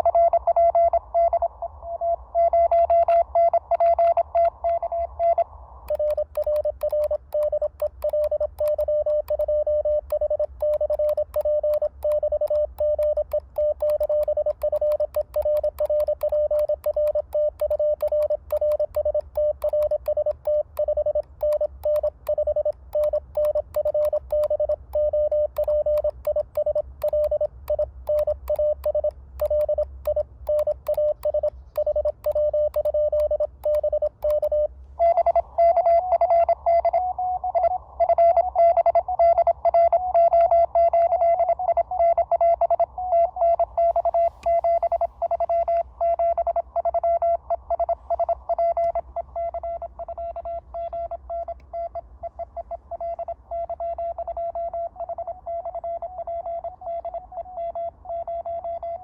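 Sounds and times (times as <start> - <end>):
morse code tones: 2.0 - 59.0
higher-pitched fast morse code: 5.9 - 35.9.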